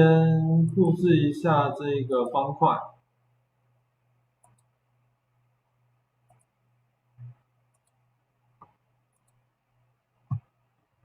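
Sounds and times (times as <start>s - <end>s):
computer mouse clicks: 4.4s - 4.8s, 6.2s - 6.6s, 7.2s - 8.0s, 8.6s - 9.4s.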